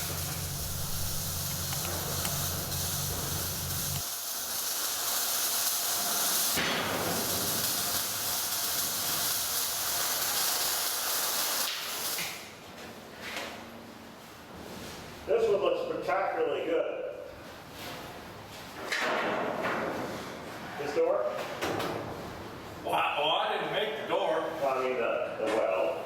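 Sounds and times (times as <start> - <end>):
low hum: 0.0 - 4.0
welding arc hissing: 0.0 - 12.5.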